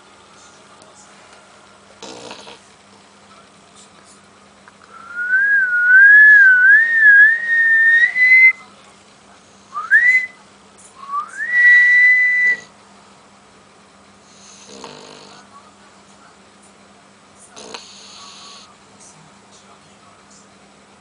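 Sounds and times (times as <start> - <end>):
person whistling a tune: 4.9 - 8.6, 9.8 - 10.4, 11.1 - 12.7.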